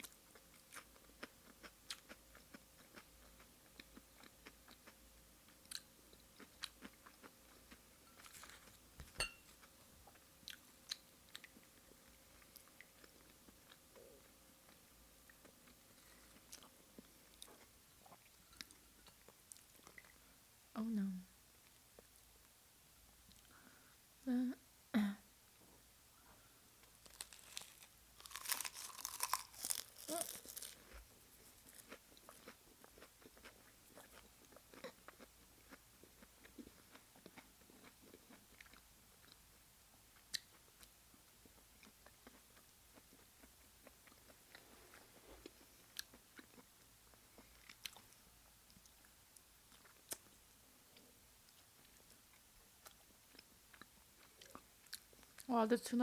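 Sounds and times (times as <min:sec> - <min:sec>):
crunchy eating: 0:27.0 - 0:39.4.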